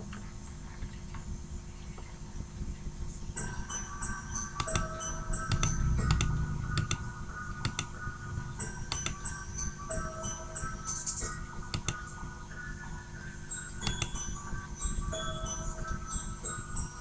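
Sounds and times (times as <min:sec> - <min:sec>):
faint hum: 0:00.0 - 0:17.0
sharp clicks: 0:04.6 - 0:08.0, 0:08.6 - 0:09.2, 0:11.1 - 0:12.1, 0:13.8 - 0:14.2.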